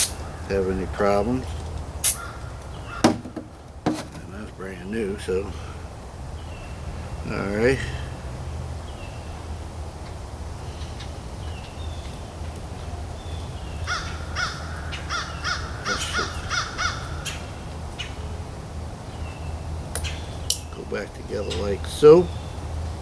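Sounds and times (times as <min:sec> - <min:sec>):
bird calling: 0:00.0 - 0:00.7, 0:02.0 - 0:08.2, 0:13.2 - 0:18.4, 0:19.1 - 0:22.6
steady low hum: 0:00.0 - 0:14.9.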